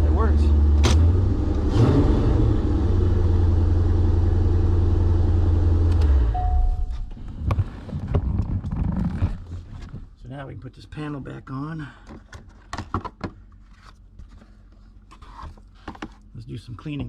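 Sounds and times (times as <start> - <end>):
car engine idling and revving: 0.0 - 7.8
short steady tone: 6.3 - 7.2.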